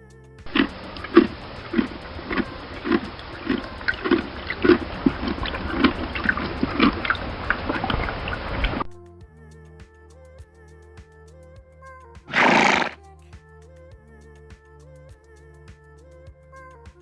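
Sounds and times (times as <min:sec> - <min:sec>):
animal making low sounds: 0:00.2 - 0:11.6, 0:12.3 - 0:13.0.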